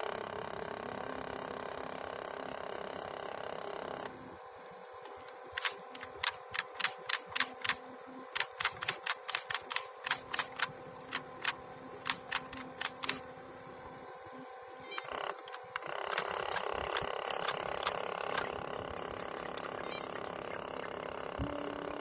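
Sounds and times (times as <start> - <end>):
steady hum: 0.0 - 22.0
sharp clicks: 5.0 - 13.3, 14.9 - 18.6.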